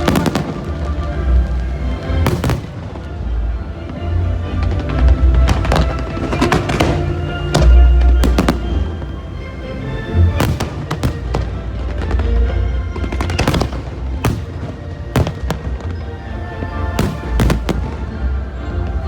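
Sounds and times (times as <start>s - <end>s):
fireworks cracking and booming: 0.0s - 3.2s, 4.6s - 9.1s, 10.4s - 16.0s, 16.6s - 18.3s
music with held notes: 0.0s - 19.0s.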